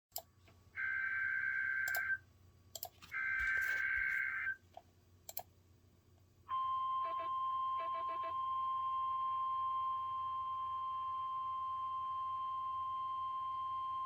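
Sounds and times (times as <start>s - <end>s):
steady warning alarm tone: 0.8s - 2.2s, 3.1s - 4.6s
screeching digital data tones: 3.2s - 4.6s.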